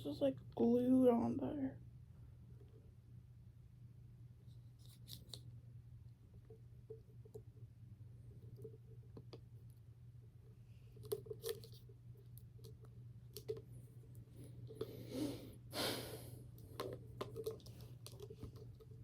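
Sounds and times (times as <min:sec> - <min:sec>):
hands clicking and knocking on container: 0:11.0 - 0:13.7, 0:16.5 - 0:19.0.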